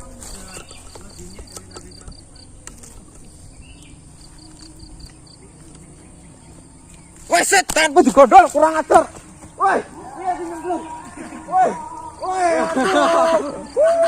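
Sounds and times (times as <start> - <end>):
cricket chirping: 0.0 - 14.0
high insect hum: 0.0 - 14.0.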